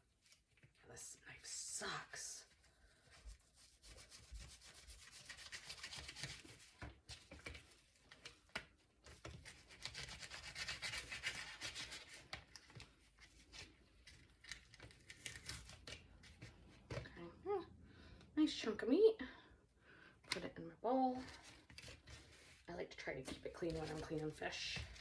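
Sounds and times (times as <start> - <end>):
knife sawing through fish: 9.6 - 12.0.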